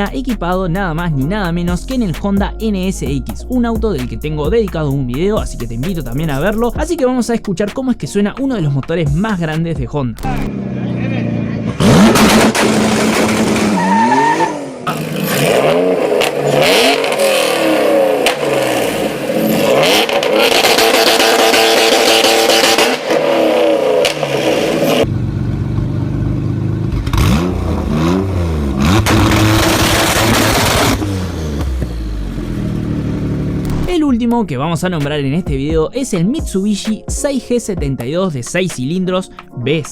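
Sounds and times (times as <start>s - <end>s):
engine revving: 10.2s - 33.9s.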